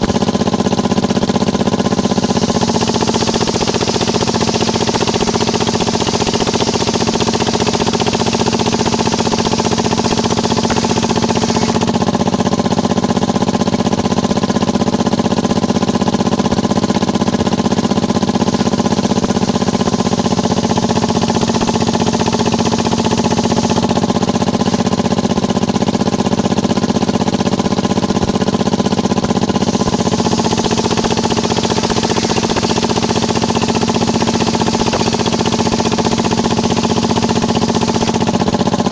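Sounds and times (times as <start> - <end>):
engine drone: 0.0 - 38.9
circular saw cutting hiss: 1.9 - 12.0, 29.4 - 38.4.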